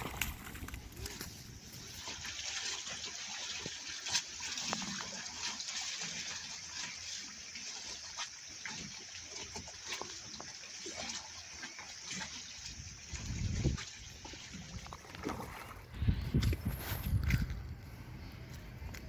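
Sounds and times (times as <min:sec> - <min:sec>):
running water hissing: 0:00.0 - 0:17.2
small splashes and ticks: 0:00.0 - 0:19.0.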